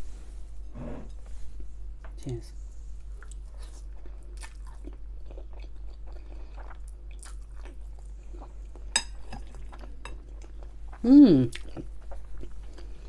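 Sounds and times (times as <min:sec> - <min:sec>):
close chewing mouth sounds: 0:03.1 - 0:13.0.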